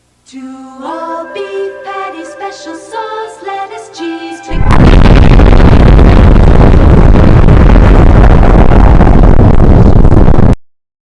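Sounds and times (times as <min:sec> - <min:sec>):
loud distorted rumbling noise: 0:04.5 - 0:10.6.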